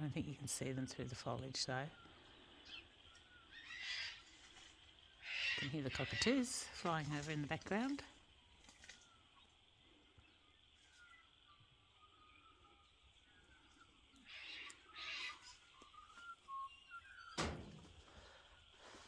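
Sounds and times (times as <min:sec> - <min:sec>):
small birds chirping: 0:00.0 - 0:19.0
sharp thump: 0:17.4 - 0:17.9.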